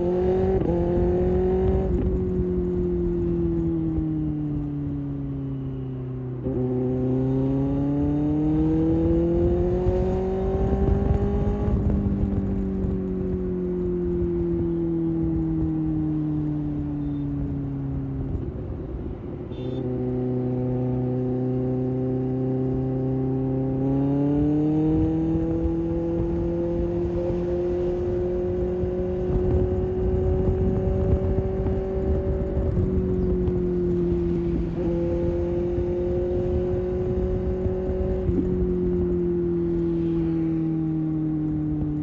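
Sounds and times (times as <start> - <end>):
motorcycle engine accelerating: 0.0 - 42.0.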